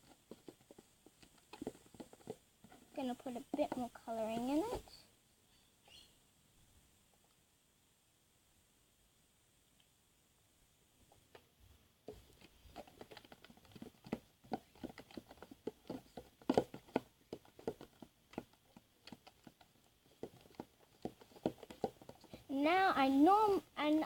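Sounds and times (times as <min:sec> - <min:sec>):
spoon stirring thick glue: 0:00.0 - 0:04.9, 0:12.1 - 0:23.8.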